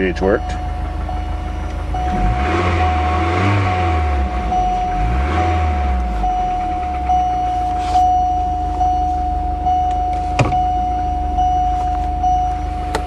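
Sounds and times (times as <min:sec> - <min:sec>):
car engine running with whine: 0:00.0 - 0:13.0.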